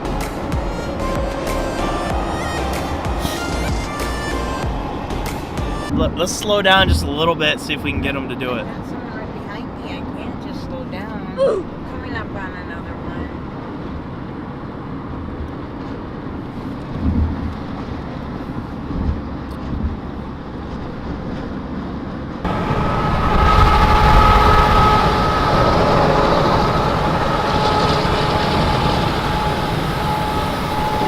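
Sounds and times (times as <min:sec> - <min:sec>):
faint steady drone: 0:00.0 - 0:16.2, 0:22.4 - 0:31.0
car road and wind noise: 0:00.0 - 0:31.0.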